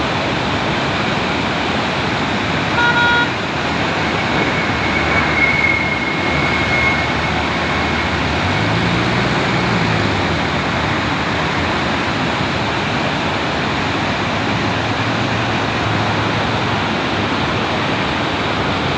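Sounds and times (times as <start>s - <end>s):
river rushing: 6.3s - 18.9s.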